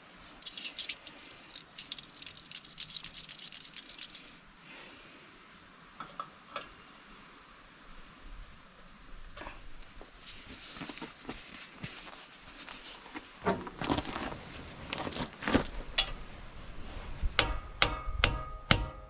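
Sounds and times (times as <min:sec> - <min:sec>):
small metal parts clinking: 0:00.3 - 0:04.4.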